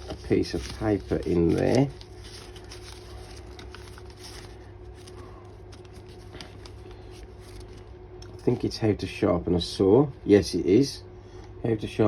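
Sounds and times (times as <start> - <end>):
paper rustling: 0.0 - 8.7
faint hum: 0.0 - 12.0.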